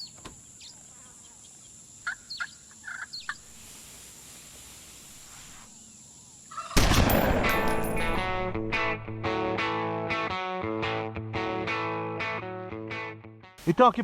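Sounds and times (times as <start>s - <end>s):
bird calls: 0.0s - 3.5s
music with distorted electric guitar: 8.2s - 13.6s.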